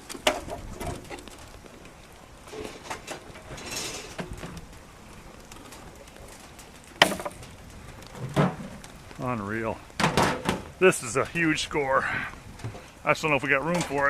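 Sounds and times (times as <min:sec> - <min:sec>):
junk knocking and clattering: 0:10.0 - 0:10.7.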